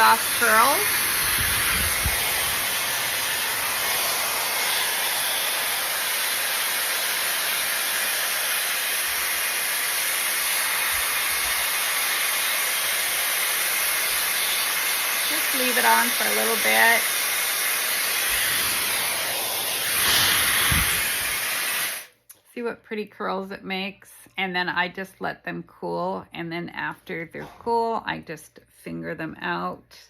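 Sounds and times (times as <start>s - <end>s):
hair styler blowing hot air: 0.0s - 22.2s.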